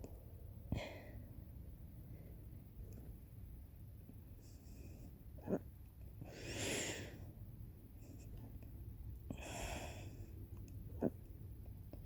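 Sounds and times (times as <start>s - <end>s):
long noisy breaths: 0.6s - 2.6s, 6.2s - 7.4s, 9.3s - 10.5s
person hiccuping: 5.4s - 5.7s.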